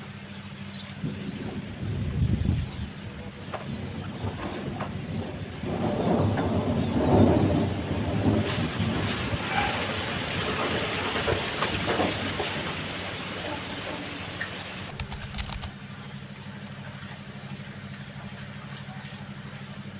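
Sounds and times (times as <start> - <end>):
sharp clicks: 14.9 - 15.7.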